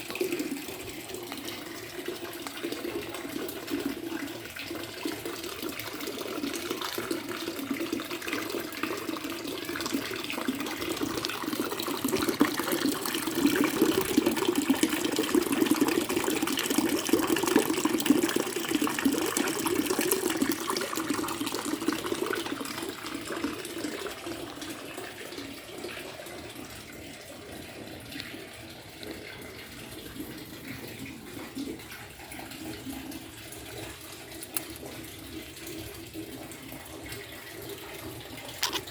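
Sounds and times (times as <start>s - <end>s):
water trickling and splashing: 0.0s - 38.9s.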